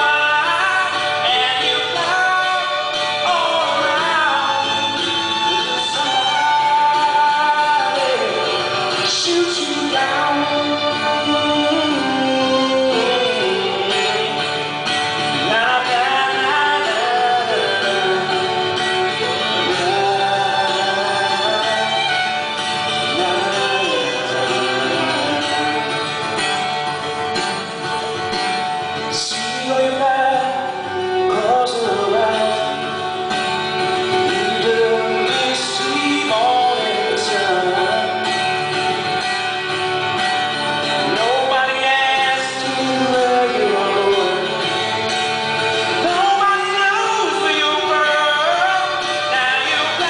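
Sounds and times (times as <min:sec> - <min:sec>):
live band playing: 0:00.0 - 0:50.0
man singing: 0:00.0 - 0:50.0.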